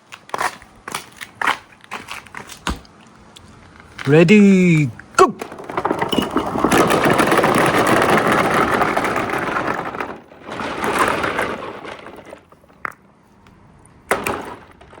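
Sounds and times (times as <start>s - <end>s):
marbles rolling down a track: 5.4s - 13.0s.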